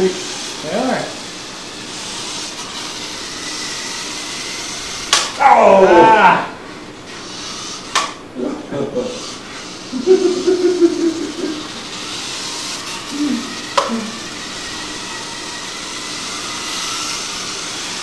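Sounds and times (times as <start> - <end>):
rc helicopter rotor whirring: 0.0 - 18.0
sharp click: 7.9 - 8.2, 13.7 - 14.0.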